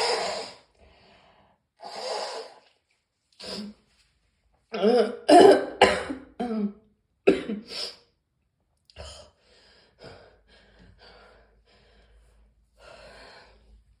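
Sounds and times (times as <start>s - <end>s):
person coughing: 5.3s - 7.7s.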